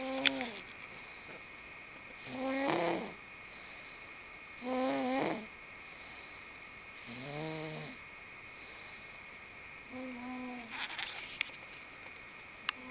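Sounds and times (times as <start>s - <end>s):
person snoring: 2.2s - 3.2s, 4.6s - 5.5s, 7.0s - 8.0s.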